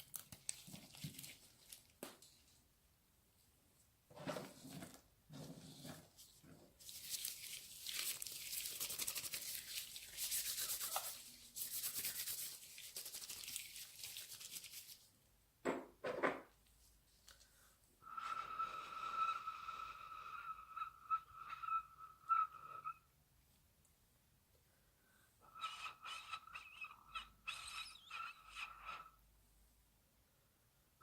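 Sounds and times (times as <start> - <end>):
close rubbing and scratching: 4.3 - 15.1
high squeak-like tone: 18.0 - 23.1, 25.5 - 29.2.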